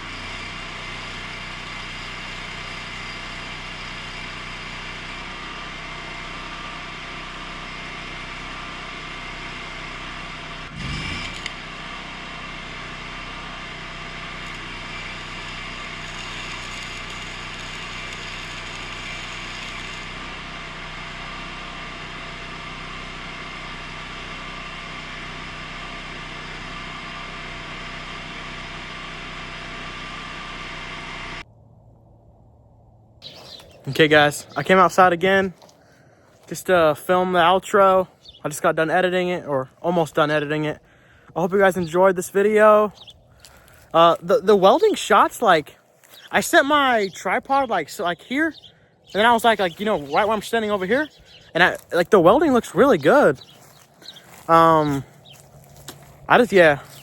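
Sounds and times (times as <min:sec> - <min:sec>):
low rumble: 0:31.4 - 0:33.2.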